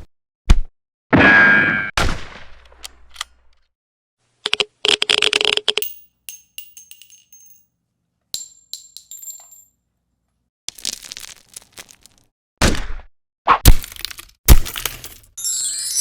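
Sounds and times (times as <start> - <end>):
small metallic clinks: 5.8 - 7.8, 8.4 - 9.8.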